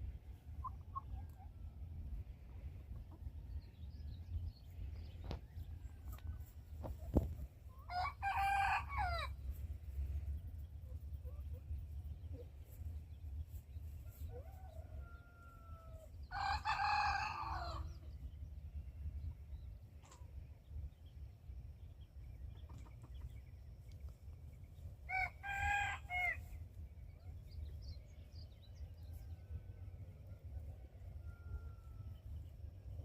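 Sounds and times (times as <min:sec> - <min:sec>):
rooster crowing: 0:07.9 - 0:09.3, 0:14.3 - 0:17.9
steady low rumble: 0:09.2 - 0:14.1.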